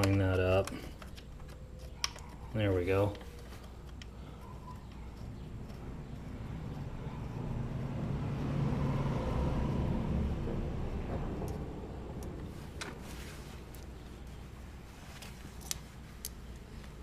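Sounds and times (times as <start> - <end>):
road vehicle passing: 5.1 - 15.0.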